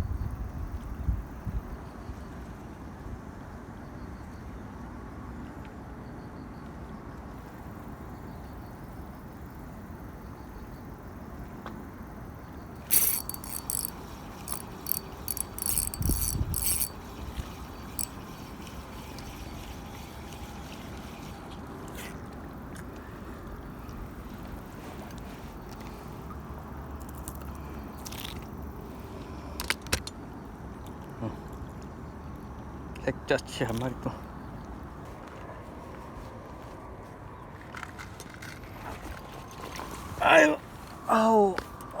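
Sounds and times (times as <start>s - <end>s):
fishing reel mechanism running: 12.8s - 21.0s.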